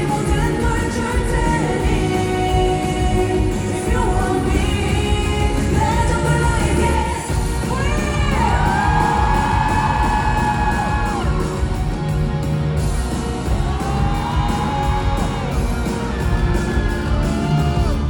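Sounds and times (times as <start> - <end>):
person singing: 0.0 - 11.4
live pop-rock band playing: 0.0 - 18.0.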